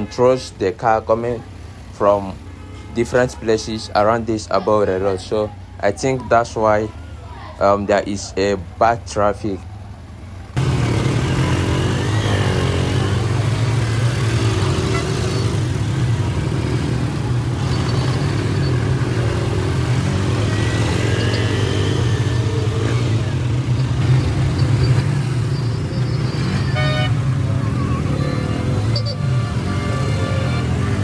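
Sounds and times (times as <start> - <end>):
engines running and revving: 8.3 - 31.0.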